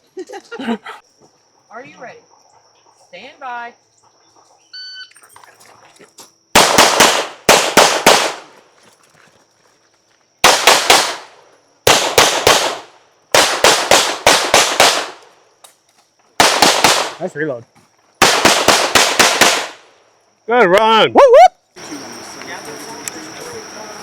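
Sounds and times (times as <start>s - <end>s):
handgun firing rapid shots: 6.6s - 8.5s, 10.4s - 11.3s, 11.9s - 15.3s, 16.4s - 17.2s, 18.2s - 19.8s.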